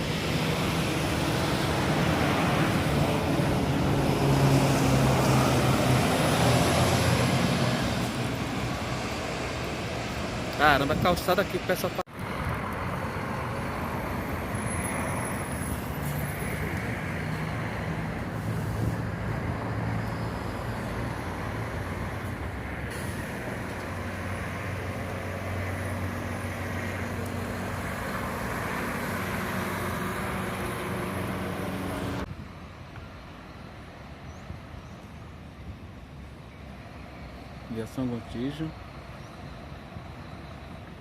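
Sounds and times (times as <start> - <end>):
bus engine running: 0.0 - 32.3
traffic noise: 0.0 - 41.0.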